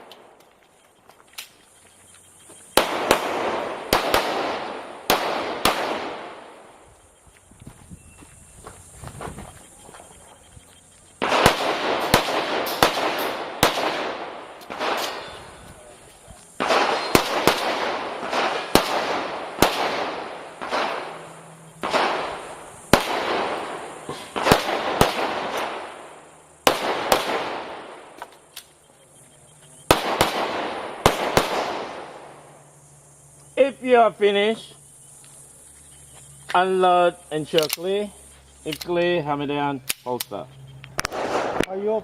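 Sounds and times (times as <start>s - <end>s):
pistol shots with echo: 2.7s - 6.7s, 11.2s - 15.6s, 16.6s - 28.3s, 29.9s - 32.3s, 41.0s - 41.9s.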